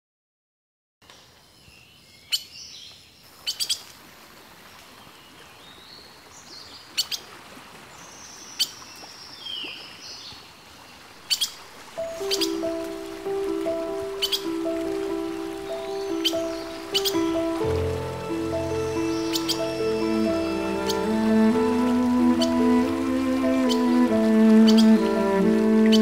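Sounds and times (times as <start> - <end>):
steady background hiss: 1.1 - 26.0
birds chirping: 11.3 - 26.0
music: 12.0 - 26.0.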